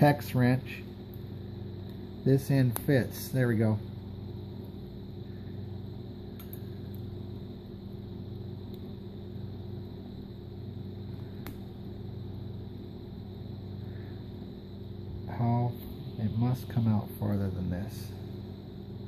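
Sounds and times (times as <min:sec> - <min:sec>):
low hum with fixed tones: 0:00.0 - 0:19.0
faint light clicks: 0:06.3 - 0:07.0, 0:11.1 - 0:11.7.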